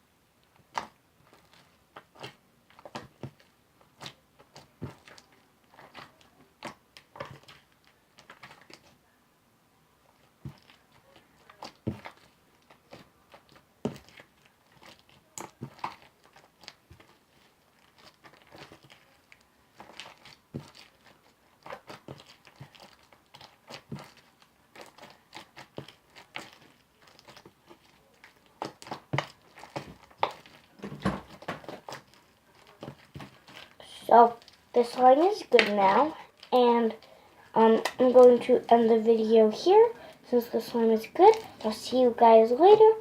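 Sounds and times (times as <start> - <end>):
slime squishing with clicks and pops: 0.4 - 8.9, 10.2 - 33.8.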